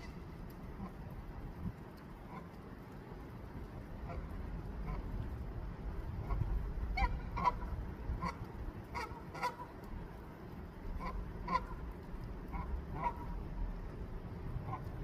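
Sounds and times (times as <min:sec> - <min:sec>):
goose honking: 0:06.2 - 0:09.7, 0:11.0 - 0:11.8, 0:12.5 - 0:13.4, 0:14.6 - 0:14.9.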